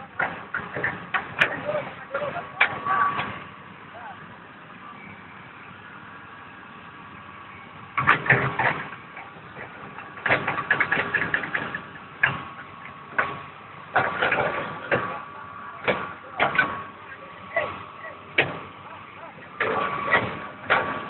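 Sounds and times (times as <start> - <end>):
excavator diesel engine running: 0.0 - 21.0
loud knocks and clatter: 0.2 - 1.6, 8.0 - 15.2, 19.6 - 21.0.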